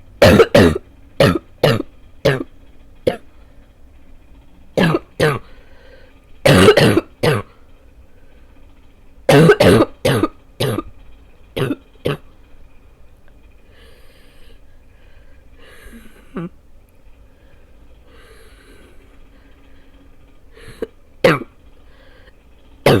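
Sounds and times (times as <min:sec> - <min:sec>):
person barking cough: 0:00.2 - 0:02.5, 0:06.5 - 0:07.5, 0:09.3 - 0:10.9.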